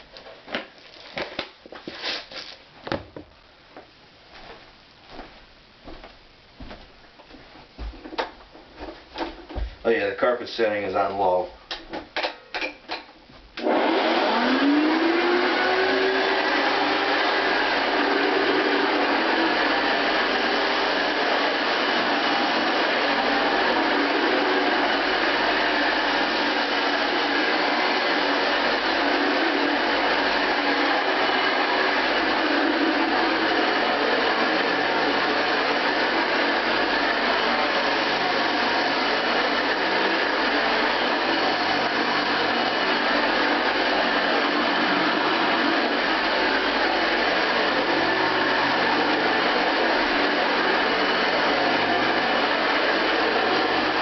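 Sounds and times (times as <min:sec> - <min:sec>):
vacuum cleaner motor whine: 0:13.6 - 0:54.0.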